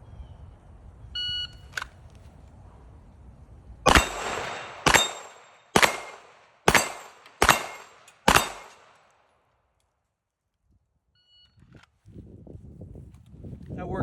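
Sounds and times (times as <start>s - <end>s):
pistol shots with echo: 3.9s - 9.0s.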